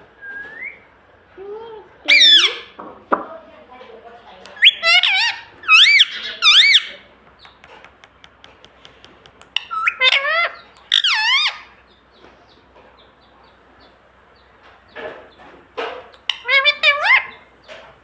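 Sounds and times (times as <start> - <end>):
parrot squawking: 2.0 - 2.8, 4.6 - 7.0, 9.6 - 11.8, 16.2 - 17.4.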